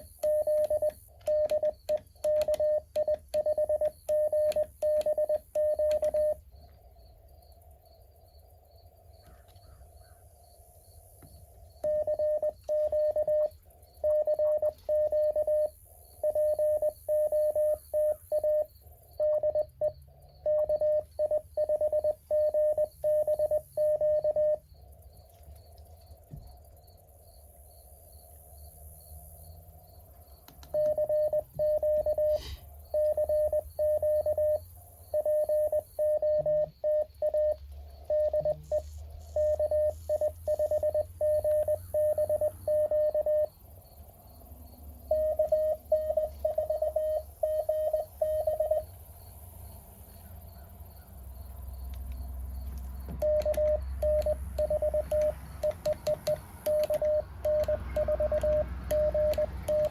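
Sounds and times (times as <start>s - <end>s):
morse code tone: 0.0s - 6.4s, 11.8s - 24.7s, 30.7s - 43.6s, 45.0s - 48.9s, 53.1s - 59.9s.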